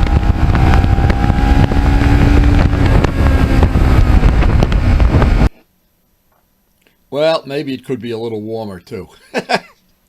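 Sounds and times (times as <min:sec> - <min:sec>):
motorcycle engine running: 0:00.0 - 0:05.5
wind rush on microphone: 0:00.0 - 0:05.6.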